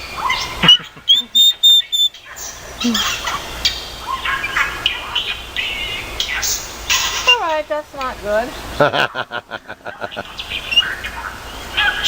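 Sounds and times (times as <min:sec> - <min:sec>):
parrot whistling high notes: 0:00.0 - 0:07.4
parrot voice-like chatter: 0:00.2 - 0:07.7.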